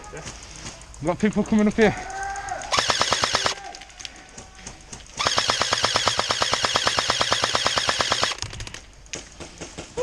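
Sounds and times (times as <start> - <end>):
airsoft gun firing bursts: 2.7 - 3.6, 5.2 - 8.9.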